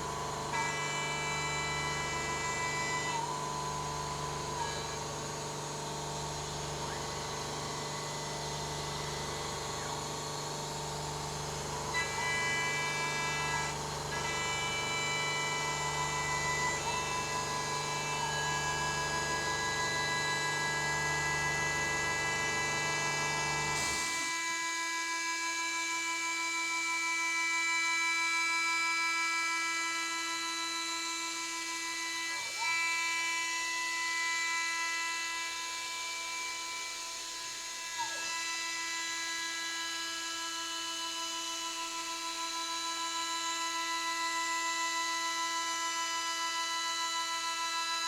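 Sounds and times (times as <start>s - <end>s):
milling machine spindle whine: 0.0s - 48.0s.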